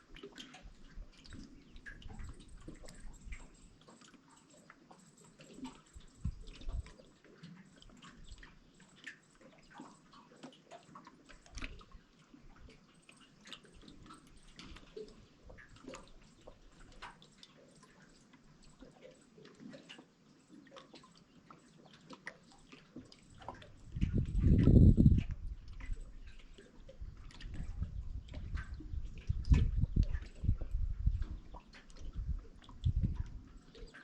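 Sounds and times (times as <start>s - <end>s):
water dripping: 0.1s - 20.0s, 20.6s - 34.0s.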